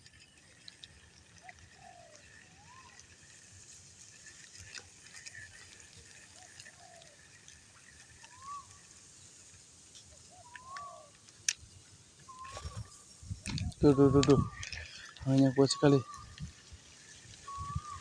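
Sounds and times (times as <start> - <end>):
light hiss: 0.0 - 18.0
whistle-like animal calls: 1.8 - 3.1, 10.3 - 11.1, 12.2 - 13.1, 13.7 - 16.5, 17.4 - 18.0
faint steady high tone: 12.2 - 18.0.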